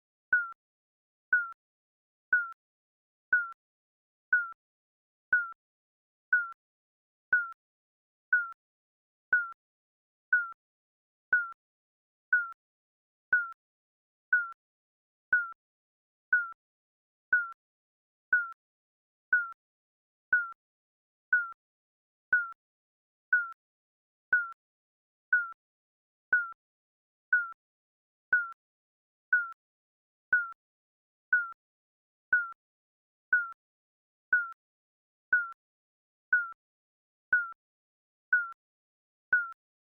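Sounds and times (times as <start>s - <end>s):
countdown timer beeps: 0.3s - 0.6s, 1.3s - 1.6s, 2.3s - 2.6s, 3.3s - 3.6s, 4.3s - 4.6s, 5.3s - 5.6s, 6.3s - 6.6s, 7.3s - 7.6s, 9.3s - 9.6s, 10.3s - 10.6s, 11.3s - 11.6s, 14.3s - 14.6s, 16.3s - 16.6s, 19.3s - 19.6s, 21.3s - 21.6s, 24.3s - 24.6s, 25.3s - 25.6s, 26.3s - 26.6s, 27.3s - 27.6s, 28.3s - 28.6s, 29.3s - 29.6s, 31.3s - 31.6s, 33.3s - 33.6s, 34.3s - 34.6s, 35.3s - 35.6s, 36.3s - 36.6s, 38.3s - 38.6s, 39.3s - 39.6s.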